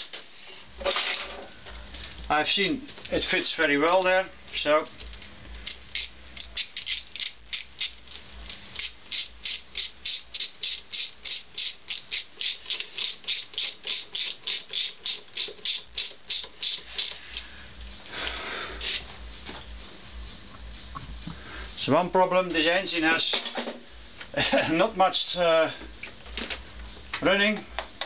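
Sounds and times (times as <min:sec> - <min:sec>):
ratchet wrench clicking: 0:05.6 - 0:08.0, 0:08.8 - 0:17.4.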